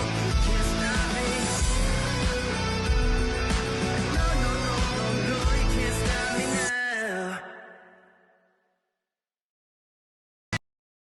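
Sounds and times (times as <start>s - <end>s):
instrumental rock music with guitar: 0.0s - 6.7s.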